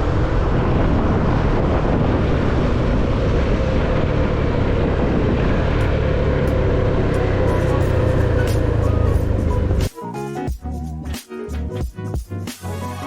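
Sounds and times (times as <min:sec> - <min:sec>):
motorcycle engine running: 0:00.0 - 0:09.9
wind: 0:00.0 - 0:09.9
road noise: 0:00.0 - 0:10.1.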